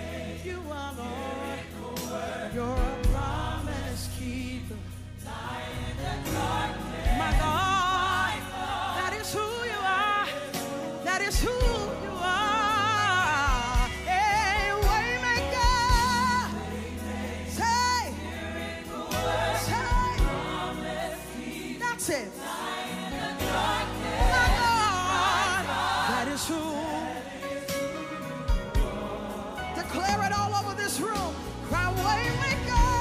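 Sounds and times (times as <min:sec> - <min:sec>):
voices singing with vibrato: 0:00.0 - 0:04.6, 0:05.2 - 0:33.0
bass line: 0:02.5 - 0:09.6.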